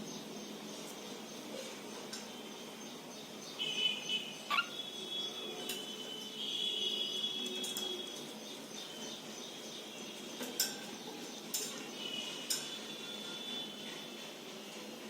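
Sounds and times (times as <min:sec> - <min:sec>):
cockatiels chirping: 0:04.5 - 0:04.7.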